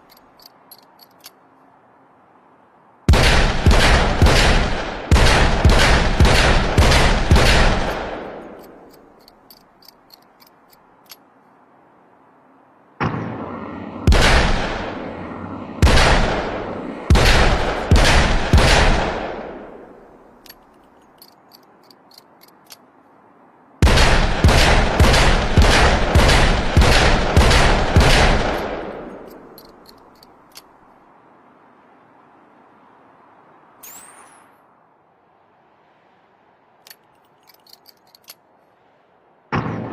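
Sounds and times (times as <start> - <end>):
faint clicks: 7.9 - 11.6, 20.4 - 23.1.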